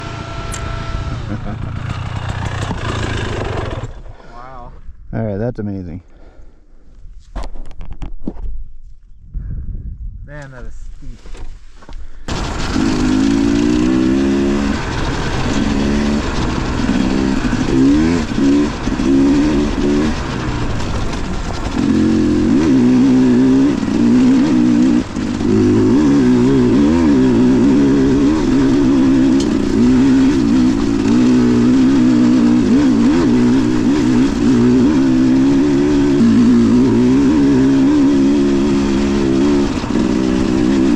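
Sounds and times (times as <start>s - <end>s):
dirt bike engine revving: 0.0s - 4.0s, 12.3s - 40.9s
steady rushing noise: 12.3s - 40.9s.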